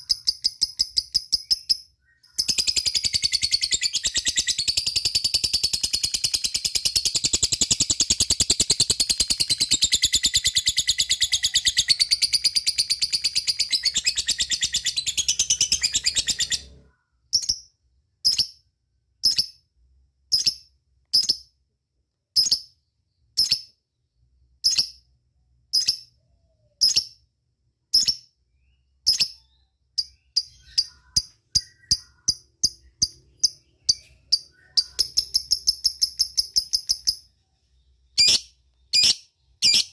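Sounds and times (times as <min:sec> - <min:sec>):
lovebird chattering trill: 0:00.0 - 0:16.8, 0:29.0 - 0:37.3, 0:38.2 - 0:39.9
bird sharp high chirps: 0:00.0 - 0:18.6, 0:22.4 - 0:23.9, 0:24.6 - 0:25.1, 0:25.7 - 0:27.3, 0:27.9 - 0:39.9.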